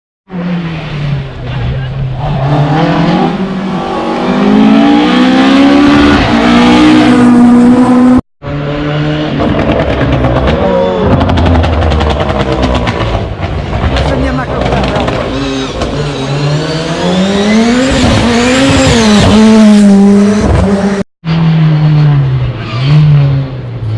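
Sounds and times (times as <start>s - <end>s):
rally car engine accelerating: 0.3s - 23.9s
car engine crackling: 9.3s - 21.0s.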